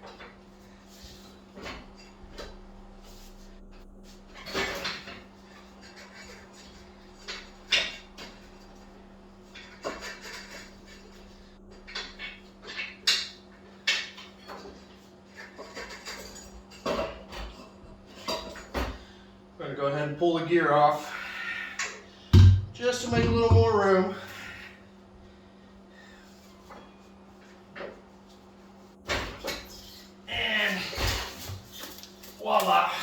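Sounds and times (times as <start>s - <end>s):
steady low hum: 0.0s - 33.0s
metallic clanks and knocks: 5.8s - 14.9s, 22.4s - 23.9s.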